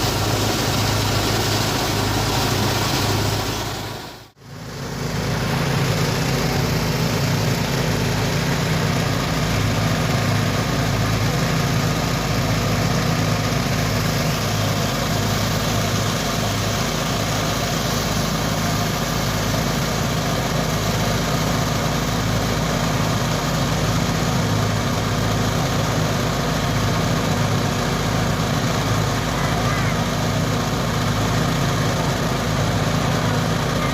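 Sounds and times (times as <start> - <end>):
threshing machine engine drone: 0.0 - 33.9
threshing rushing noise: 0.0 - 33.9.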